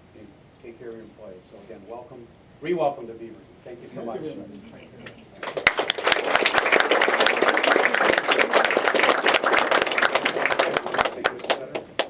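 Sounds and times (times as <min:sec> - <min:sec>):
audience applauding: 0:05.4 - 0:12.0.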